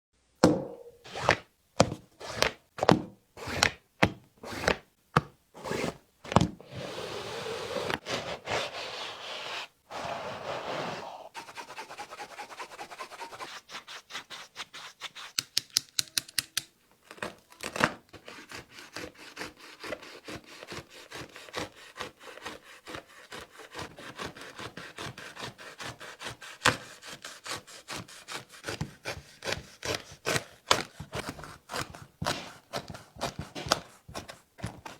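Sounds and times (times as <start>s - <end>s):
blade sawing through shoe: 9.9s - 15.0s, 18.2s - 34.9s.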